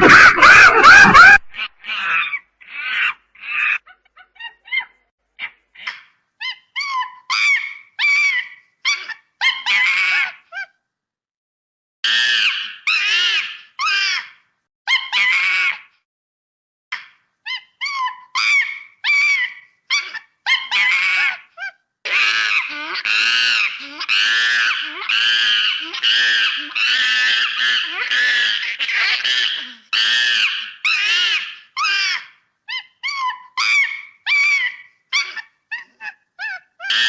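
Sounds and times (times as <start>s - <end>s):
monkey calling: 0.0s - 10.7s, 12.0s - 15.9s, 17.0s - 37.0s.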